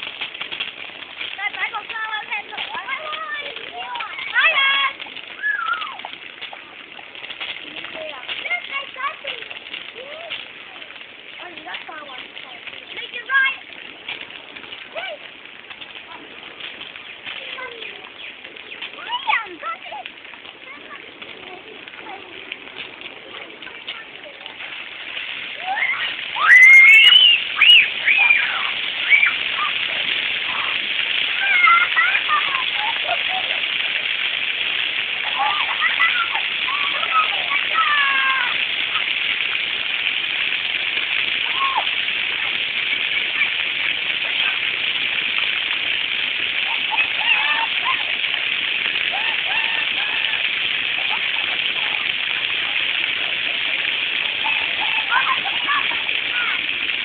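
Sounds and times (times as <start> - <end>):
water falling and splashing: 0.0 - 57.0
children squealing: 1.7 - 6.2, 25.4 - 39.8, 41.2 - 45.1, 46.1 - 57.0
faint voices calling out: 46.5 - 57.0.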